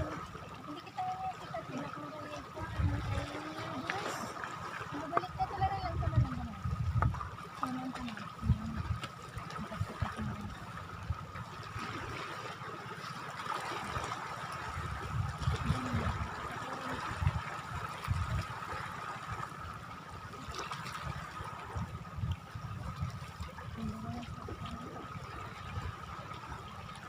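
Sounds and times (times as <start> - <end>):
water trickling and lapping: 0.0 - 27.0.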